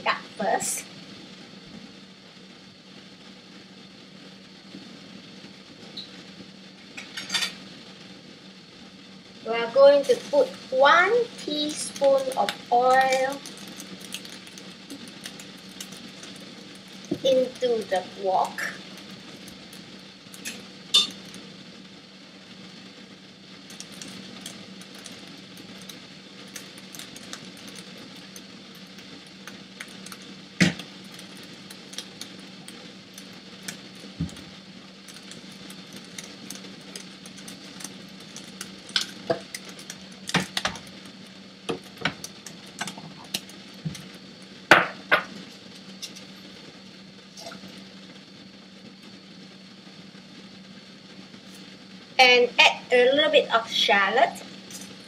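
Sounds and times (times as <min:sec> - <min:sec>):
background hum: 0:00.0 - 0:55.0.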